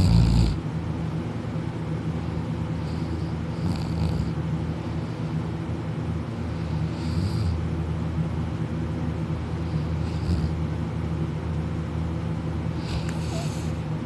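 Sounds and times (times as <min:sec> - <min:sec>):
person snoring: 0:00.0 - 0:00.6, 0:02.8 - 0:04.4, 0:06.6 - 0:07.6, 0:09.7 - 0:10.6, 0:12.7 - 0:13.8.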